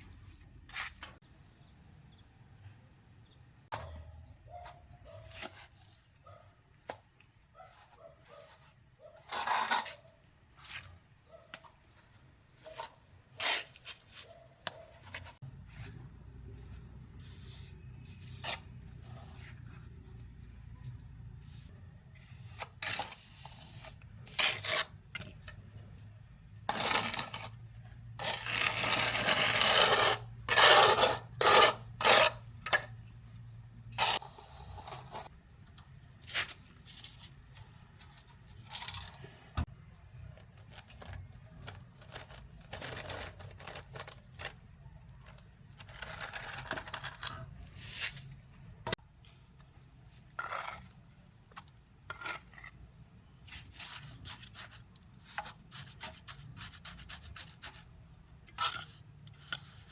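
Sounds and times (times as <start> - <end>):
handling scrapes and rustles: 4.6 - 7.0, 7.6 - 25.6, 33.9 - 52.8.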